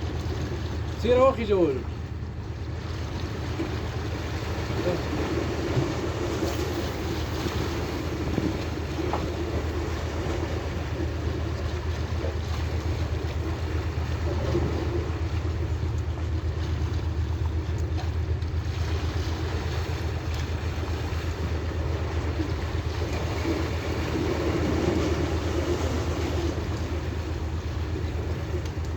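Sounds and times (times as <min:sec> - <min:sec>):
boat engine humming: 0:00.0 - 0:28.9
water noise: 0:00.0 - 0:28.9.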